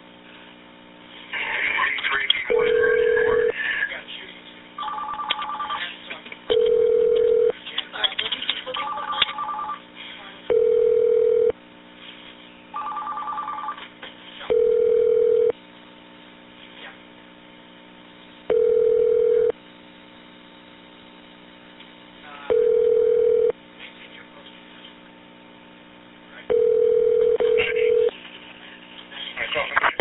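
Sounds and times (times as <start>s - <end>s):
telephone ringing tone: 2.5s - 3.5s, 4.8s - 5.9s, 6.5s - 7.6s, 8.8s - 9.8s, 10.5s - 11.6s, 12.8s - 13.8s, 14.5s - 15.6s, 18.5s - 19.6s, 22.5s - 23.6s, 26.5s - 28.1s
touch-tone dialing beeps: 6.5s - 7.5s.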